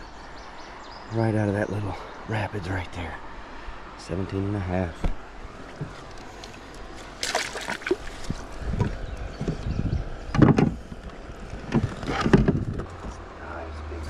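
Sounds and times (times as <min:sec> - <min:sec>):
water splashing: 0:05.5 - 0:09.1
knocks and bumps on kayak: 0:07.2 - 0:10.8.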